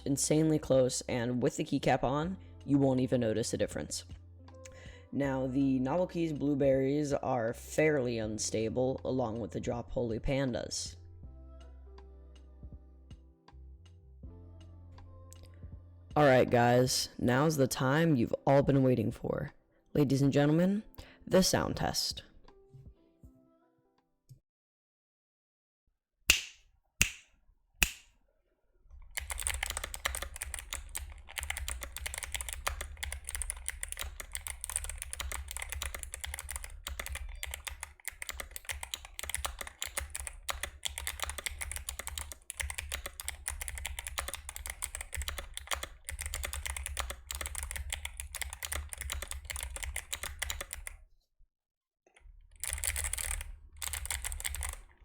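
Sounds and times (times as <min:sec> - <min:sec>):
typing on a clicky mechanical keyboard: 0:29.1 - 0:51.0, 0:52.5 - 0:55.0.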